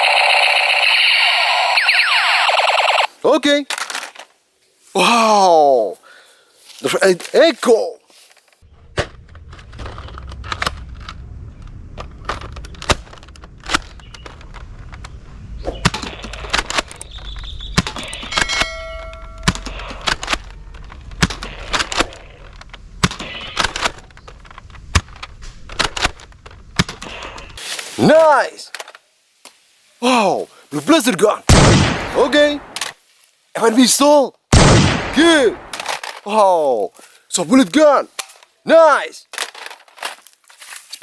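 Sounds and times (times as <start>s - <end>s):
low rumble: 8.7s - 15.6s.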